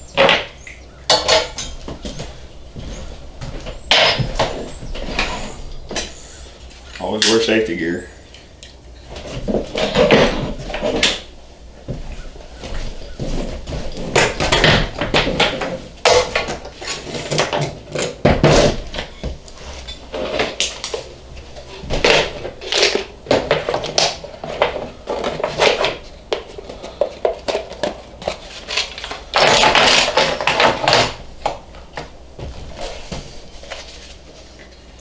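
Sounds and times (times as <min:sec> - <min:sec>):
metal tools clanking and rattling: 0:00.0 - 0:07.6, 0:12.0 - 0:26.0, 0:28.3 - 0:31.8.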